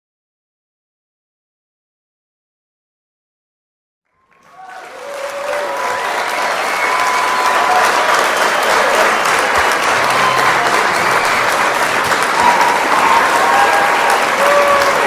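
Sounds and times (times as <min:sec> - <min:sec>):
crowd applauding: 0:04.1 - 0:15.0.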